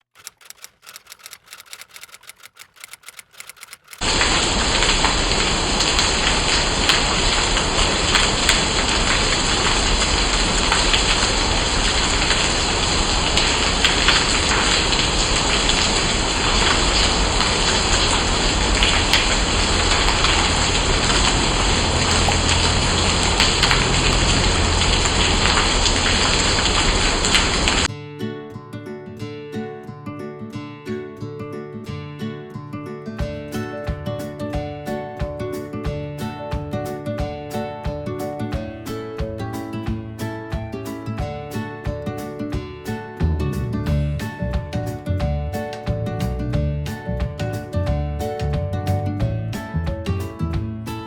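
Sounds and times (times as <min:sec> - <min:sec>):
fast faint ticking: 0:00.1 - 0:04.0
heavy rain falling: 0:04.0 - 0:27.9.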